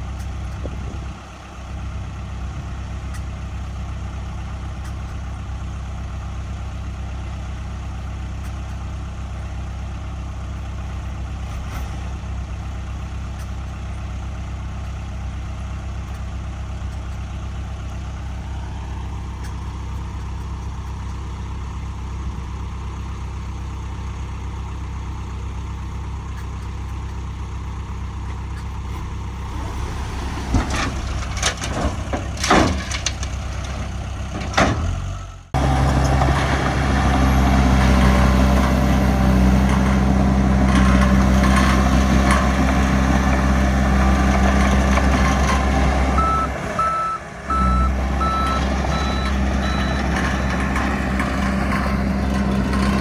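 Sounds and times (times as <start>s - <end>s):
heavy diesel engine idling: 0.0s - 53.0s
metal clanks and knocks: 11.3s - 12.4s, 28.2s - 35.2s.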